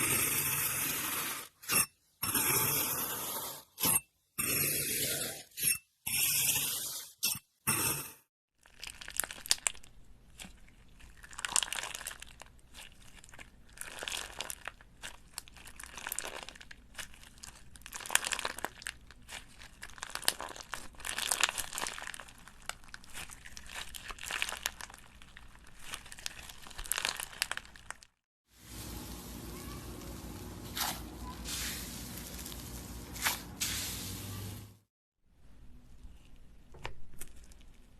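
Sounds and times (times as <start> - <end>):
crunchy material being mixed: 8.6 - 34.7.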